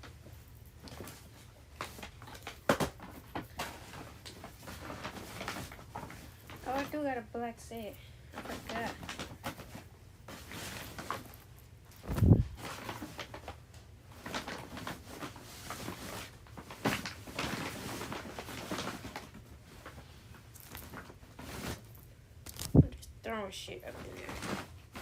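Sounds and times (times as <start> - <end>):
clothes rustling: 0.0 - 25.0.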